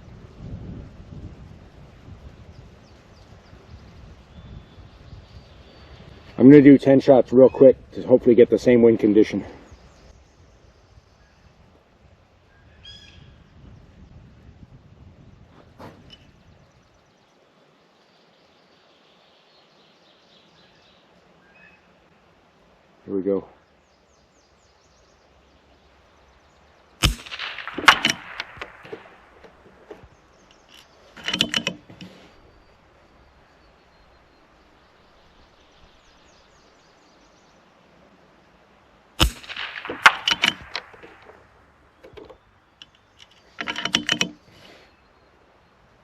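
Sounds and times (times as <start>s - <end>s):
rifle shots: 27.0s - 30.1s, 39.2s - 41.7s
rifle bolt clicks and rattles: 27.0s - 32.2s, 39.2s - 44.4s.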